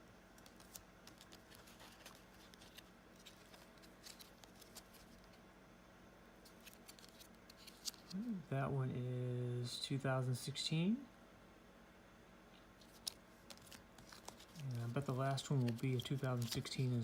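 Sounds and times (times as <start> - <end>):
low room hum: 0.0 - 17.0
packaging rustling: 0.4 - 5.4, 6.5 - 8.2, 12.8 - 17.0.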